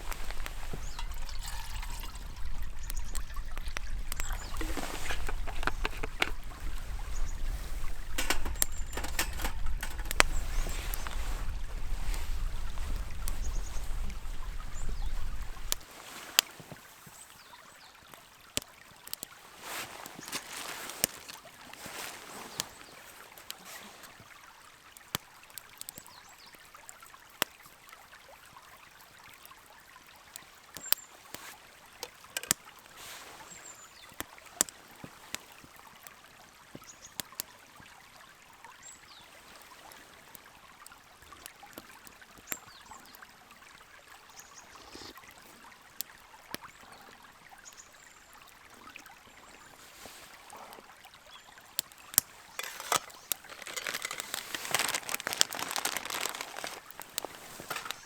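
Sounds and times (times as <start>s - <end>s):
wood fire crackling: 0.0s - 17.0s, 18.5s - 24.2s, 30.2s - 33.4s, 51.8s - 58.0s.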